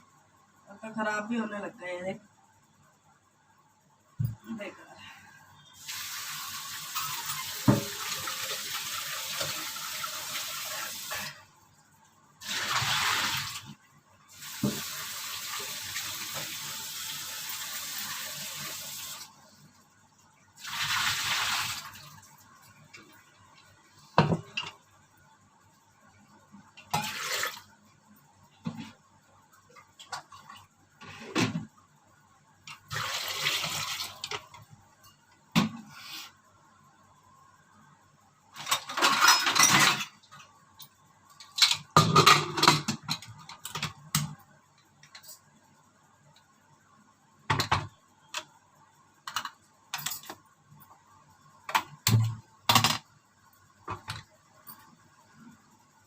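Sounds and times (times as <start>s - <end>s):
tap water running into a pot: 5.8s - 11.3s, 12.4s - 13.7s, 14.3s - 19.3s, 20.6s - 22.1s, 27.0s - 27.6s, 32.9s - 34.4s.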